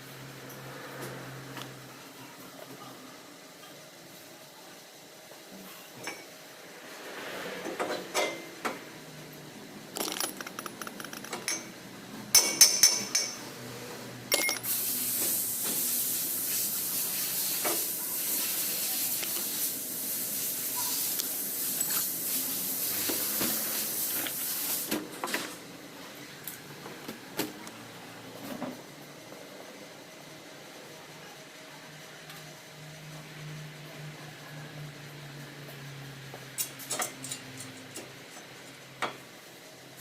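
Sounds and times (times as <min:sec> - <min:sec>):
metal tools clinking: 0:10.0 - 0:11.8, 0:14.3 - 0:14.8
high pressure hiss: 0:14.6 - 0:25.0.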